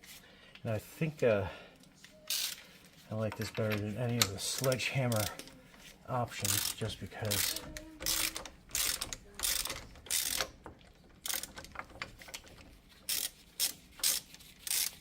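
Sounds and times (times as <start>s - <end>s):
ratchet wrench clicking: 2.3s - 2.6s, 4.2s - 5.4s, 6.4s - 15.0s.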